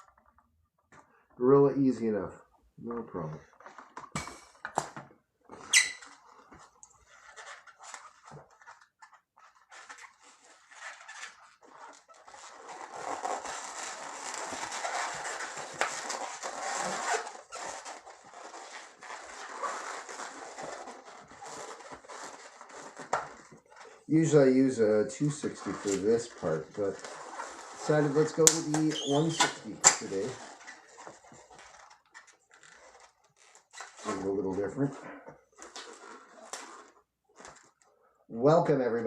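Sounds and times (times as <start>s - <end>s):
balloons rubbing and squeaking: 0.0s - 4.1s, 5.5s - 39.0s.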